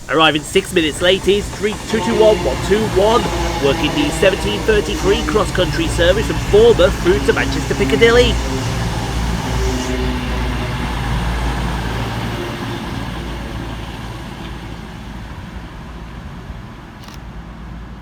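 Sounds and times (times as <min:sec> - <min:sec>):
train diesel engines humming: 0:00.0 - 0:18.0.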